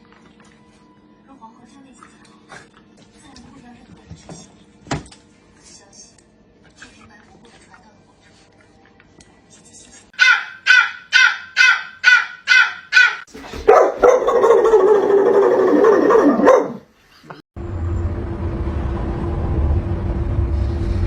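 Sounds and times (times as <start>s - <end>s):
small dog barking: 10.2s - 15.1s, 15.7s - 16.9s
low rumble with faint hum: 17.6s - 21.0s.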